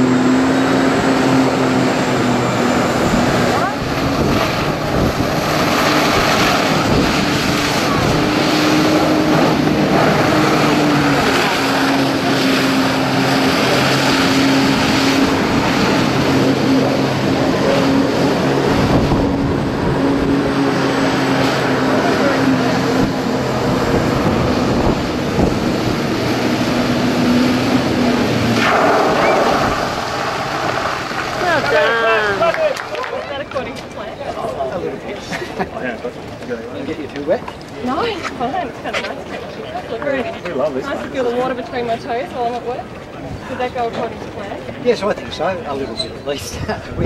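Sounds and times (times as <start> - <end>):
loud rushing noise: 0.0 - 33.0
watercraft engine humming: 0.0 - 47.0
brief rushing surge: 28.5 - 30.6.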